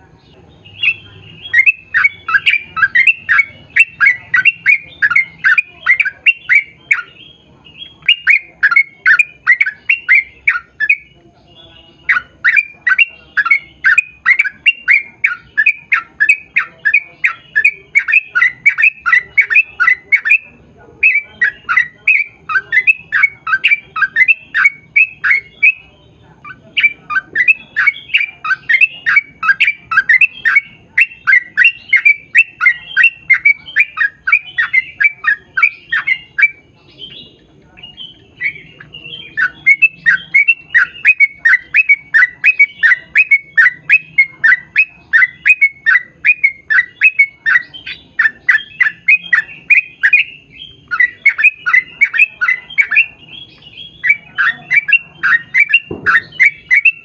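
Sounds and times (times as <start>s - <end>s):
bulbul singing falling notes: 26.8s - 57.0s.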